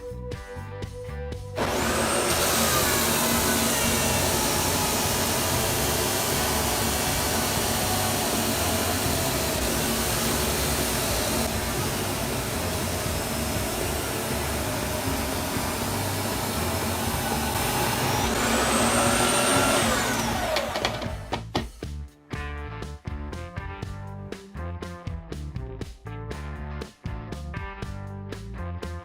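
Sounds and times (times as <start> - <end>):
electric drill whining: 1.6 - 21.6.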